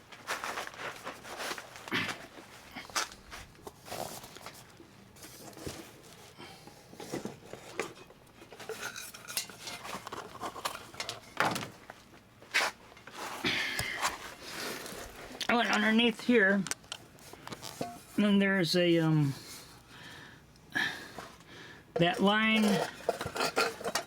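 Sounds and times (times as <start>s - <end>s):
rustling: 0.0s - 6.4s.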